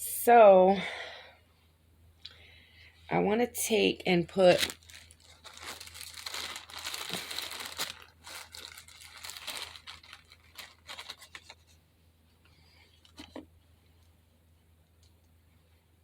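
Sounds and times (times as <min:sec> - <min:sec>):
wrapping material crumpling: 0:04.3 - 0:11.8.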